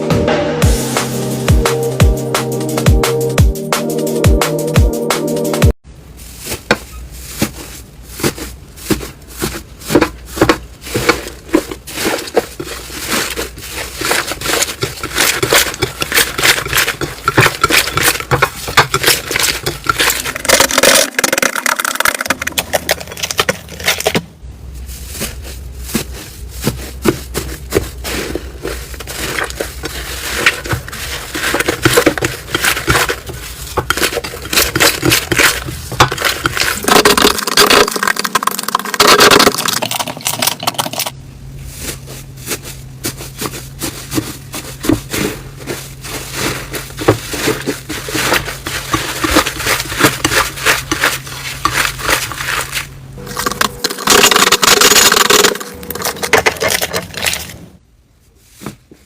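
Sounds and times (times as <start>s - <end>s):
slime crackling and popping: 12.9s - 24.2s, 29.0s - 41.2s, 45.9s - 57.6s.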